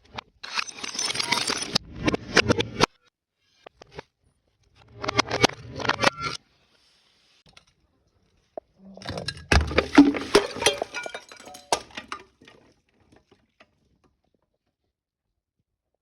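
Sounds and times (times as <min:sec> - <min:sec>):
glass breaking and crunching: 0:09.1 - 0:12.7.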